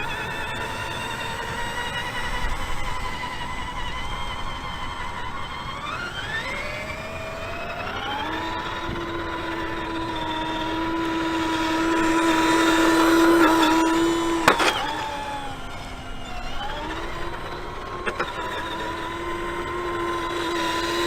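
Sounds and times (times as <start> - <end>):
toy truck motor whine: 0.0 - 21.0.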